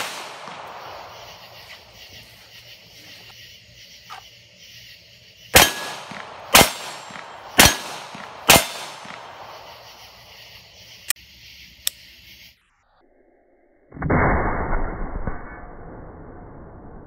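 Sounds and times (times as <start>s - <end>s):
echoing gunshots: 0.0s - 1.6s, 5.5s - 10.0s.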